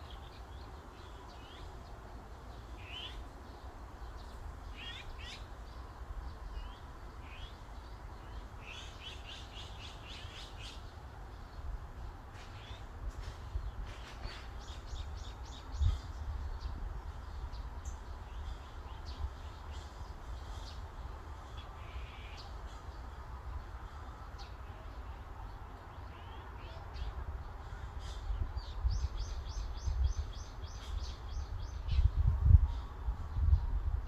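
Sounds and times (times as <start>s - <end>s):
wind rumble on microphone: 13.0s - 21.2s, 27.0s - 34.0s.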